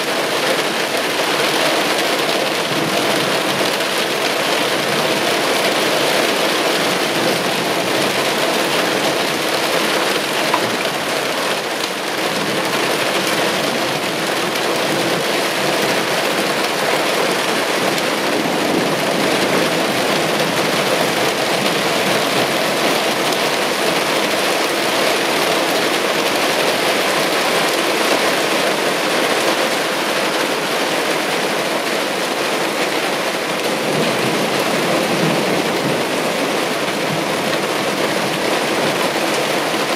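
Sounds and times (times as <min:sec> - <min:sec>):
heavy rain on hard surfaces: 0:00.0 - 0:39.9.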